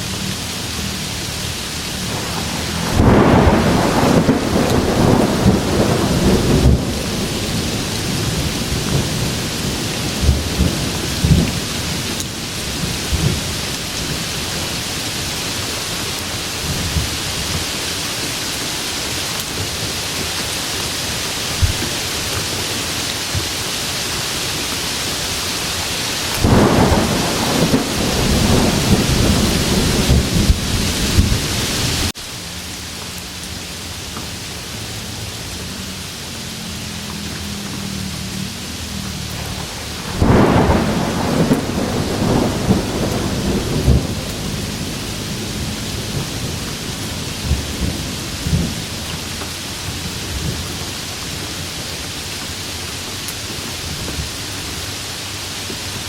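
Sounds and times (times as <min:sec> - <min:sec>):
rolling thunder: 0:00.0 - 0:17.8, 0:25.9 - 0:32.1, 0:37.5 - 0:51.4
heavy rain hiss: 0:00.0 - 0:56.0.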